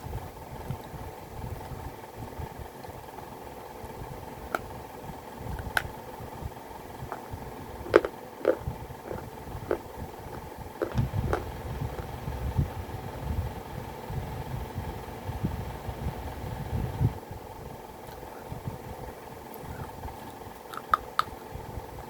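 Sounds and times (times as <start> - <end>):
low rumble: 0.0 - 22.0
steady hum: 0.0 - 22.0
clay pieces crunching when chewed: 7.1 - 12.1, 19.5 - 21.4.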